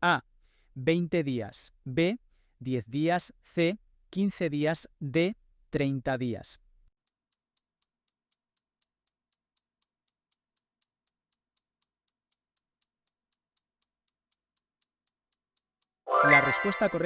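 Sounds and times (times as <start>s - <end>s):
clock ticking: 7.0s - 16.0s.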